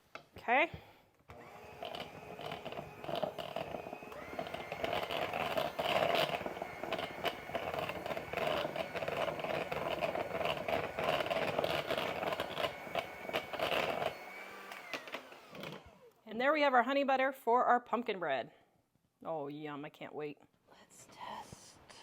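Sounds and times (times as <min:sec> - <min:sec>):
electric hand mixer whining: 0:01.3 - 0:16.2
beaters scraping bowl: 0:01.4 - 0:15.9.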